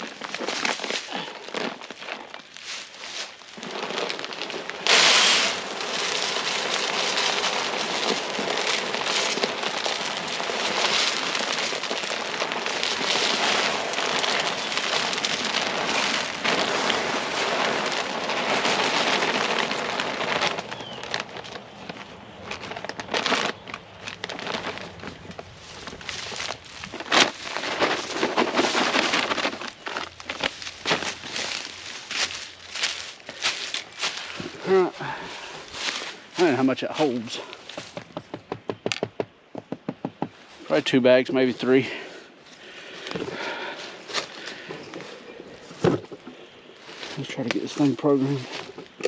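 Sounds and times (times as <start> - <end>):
crackles and rustles: 0.0 - 49.0
corn kernels pouring into hopper: 3.6 - 20.8.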